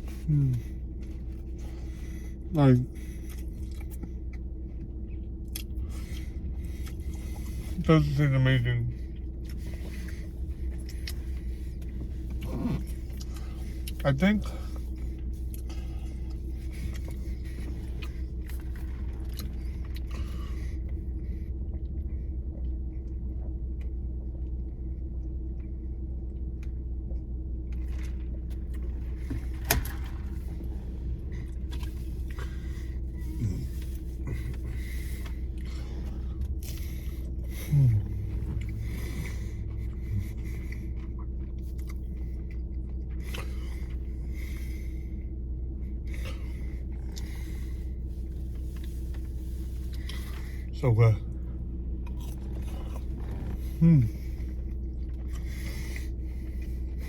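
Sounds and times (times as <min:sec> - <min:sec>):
steady low rumble: 0:00.0 - 0:57.0
person eating: 0:05.5 - 0:07.8, 0:09.1 - 0:21.0, 0:27.7 - 0:44.7, 0:46.1 - 0:50.7, 0:51.3 - 0:57.0.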